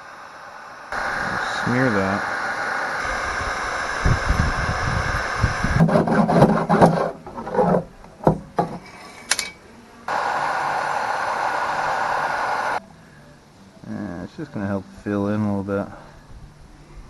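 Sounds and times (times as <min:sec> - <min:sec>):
heat gun blowing hiss: 0:00.0 - 0:06.4, 0:10.1 - 0:12.8
plastic scraping and rubbing: 0:05.7 - 0:09.3.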